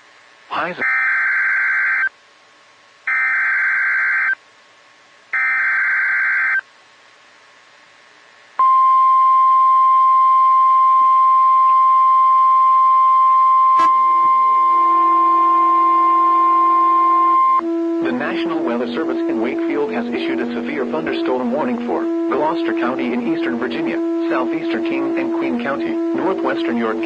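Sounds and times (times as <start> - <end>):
steady alarm tone: 0.8 - 2.1, 3.1 - 4.4, 5.4 - 6.6, 8.6 - 27.0
digital data screech bursts: 19.5 - 27.0.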